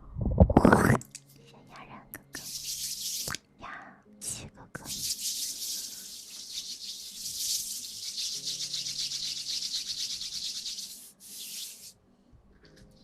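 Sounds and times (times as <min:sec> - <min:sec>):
hair scrubbing and rustling: 0:04.9 - 0:12.0.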